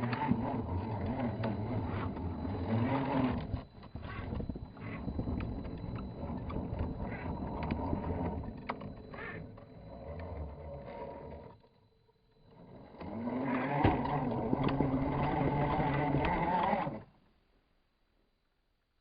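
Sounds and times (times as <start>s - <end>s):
scattered clicks: 0.0s - 11.8s
electric motor whining: 0.0s - 17.1s.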